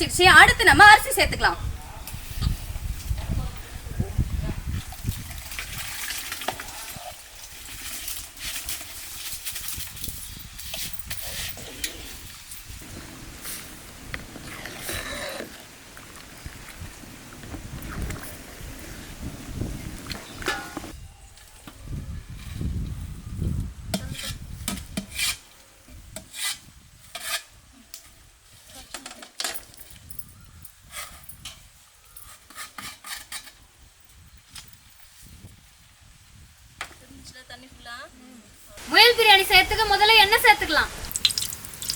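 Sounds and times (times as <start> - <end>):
boiling water hissing: 12.3 - 20.9, 40.8 - 41.9.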